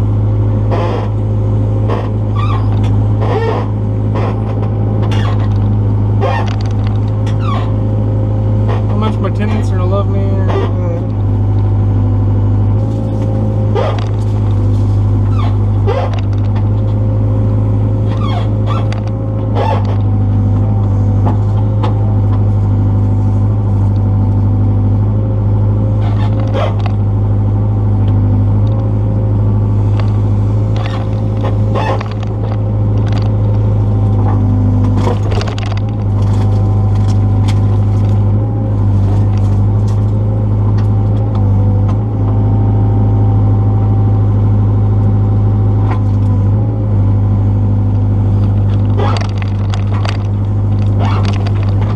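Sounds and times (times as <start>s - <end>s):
excavator engine running: 0.0s - 51.9s
sharp knocks and scrapes: 29.9s - 33.4s.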